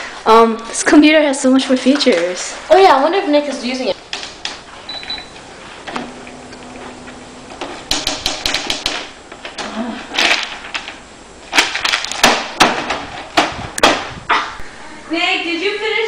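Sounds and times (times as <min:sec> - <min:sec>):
typewriter keys clacking: 0:07.9 - 0:09.0.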